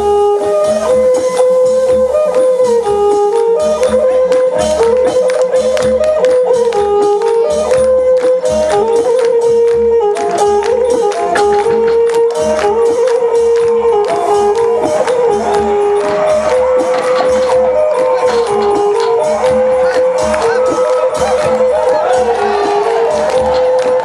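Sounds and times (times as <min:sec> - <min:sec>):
traditional melody: 0:00.0 - 0:24.0
low drum beats: 0:10.0 - 0:24.0.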